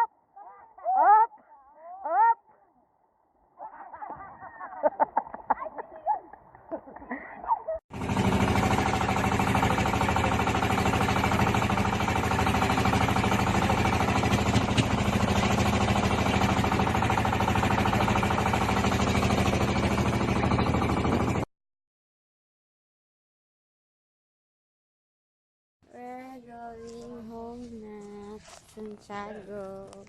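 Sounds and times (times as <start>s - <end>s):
engine running loudly: 7.9s - 21.5s.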